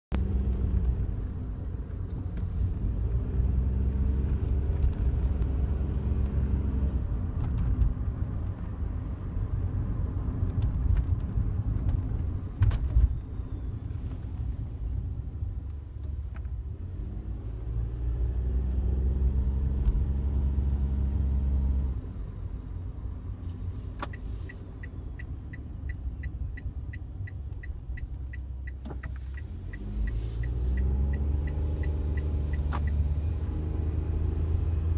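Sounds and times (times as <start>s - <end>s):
car engine and road rumble: 0.0s - 34.9s
turn signal ticking: 23.4s - 33.5s.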